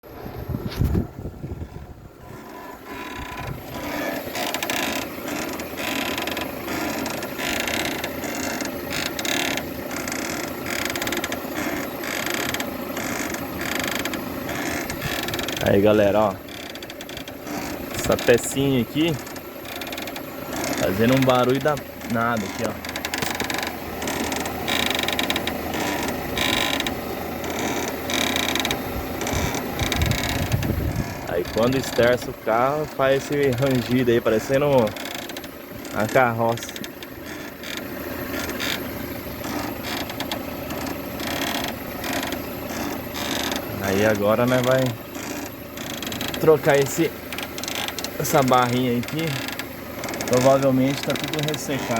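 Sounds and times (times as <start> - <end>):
suspension link creaking: 0.0 - 51.9.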